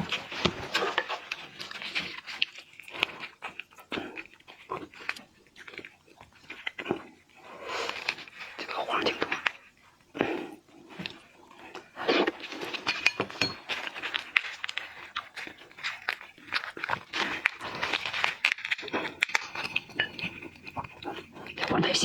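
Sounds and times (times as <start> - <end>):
small crunches: 0.0 - 21.7
wet chewing and sucking: 0.0 - 22.0.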